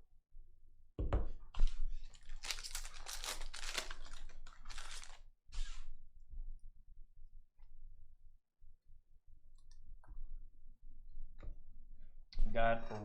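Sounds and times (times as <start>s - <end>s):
foil pack tearing and crinkling: 2.0s - 5.2s.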